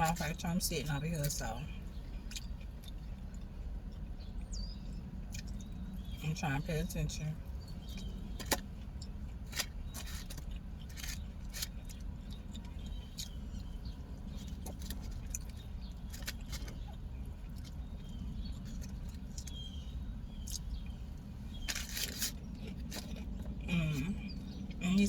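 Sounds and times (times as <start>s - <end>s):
low hum inside a car: 0.0s - 25.0s
chewing and lip smacks: 2.0s - 6.2s, 7.6s - 21.0s, 21.6s - 23.7s.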